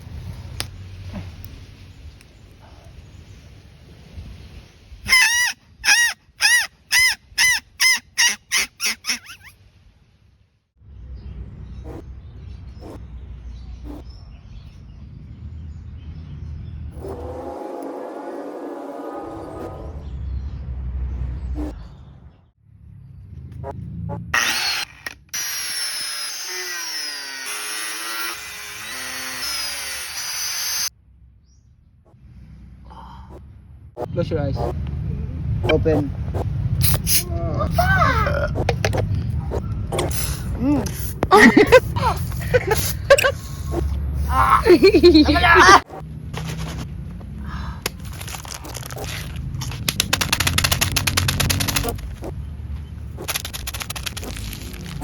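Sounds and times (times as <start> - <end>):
drill-like mechanical whirring: 24.4 - 30.9.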